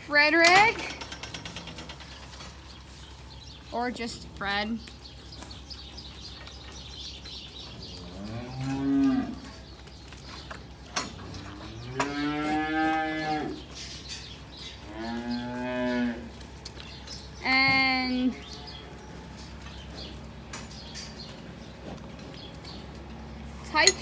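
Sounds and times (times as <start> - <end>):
cows mooing: 7.7 - 9.8, 10.6 - 24.0.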